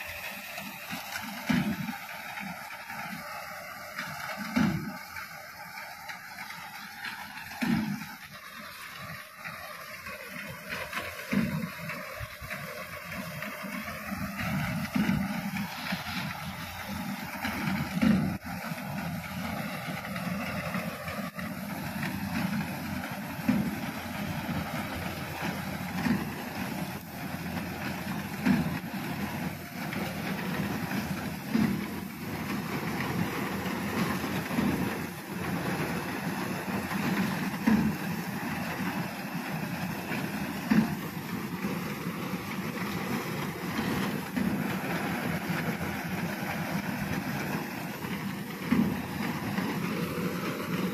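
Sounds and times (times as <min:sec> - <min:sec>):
harvester engine and machinery: 0:00.0 - 0:50.9
machine knocking: 0:22.0 - 0:50.9.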